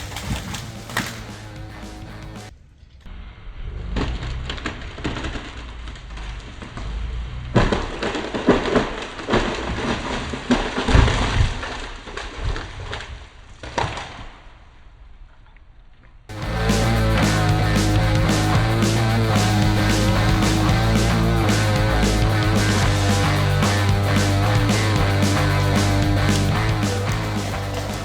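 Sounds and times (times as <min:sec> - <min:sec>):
wood cracking and snapping: 0:07.6 - 0:14.2.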